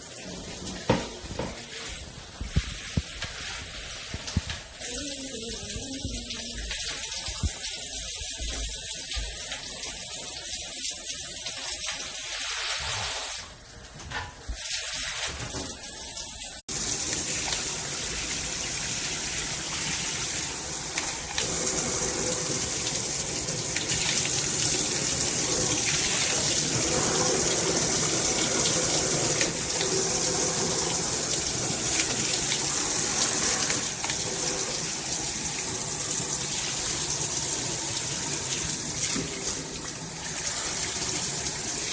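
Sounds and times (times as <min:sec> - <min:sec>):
shower head spraying water: 0:16.7 - 0:41.9.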